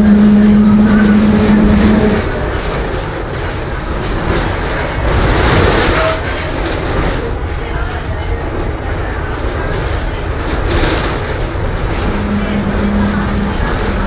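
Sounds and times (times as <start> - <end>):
road noise: 0.0 - 3.4, 11.6 - 14.0
bus engine running: 0.0 - 5.9, 8.9 - 14.0.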